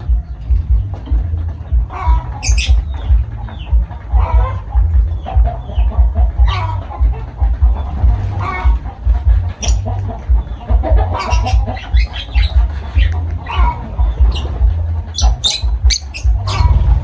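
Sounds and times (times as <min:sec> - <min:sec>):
birds calling: 0:00.0 - 0:17.0
music with low pulsing beat: 0:00.0 - 0:17.0.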